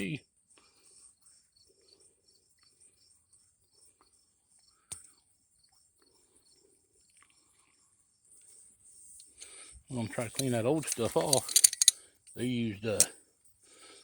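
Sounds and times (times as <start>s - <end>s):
insects chirring: 8.8s - 13.1s
sharp click: 10.4s - 11.9s.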